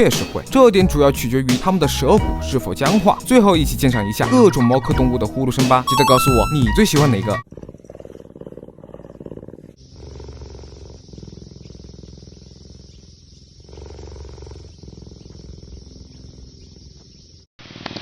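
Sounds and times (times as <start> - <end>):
wild cat purring: 0.0 - 1.8, 7.4 - 17.5.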